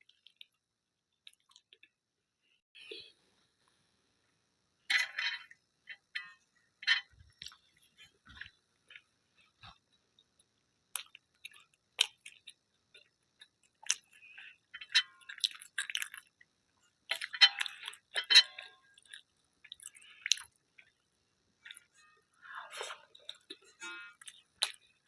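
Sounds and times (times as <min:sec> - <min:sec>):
person chewing food: 0:00.0 - 0:00.6, 0:01.2 - 0:01.9, 0:07.3 - 0:22.0, 0:22.6 - 0:25.0.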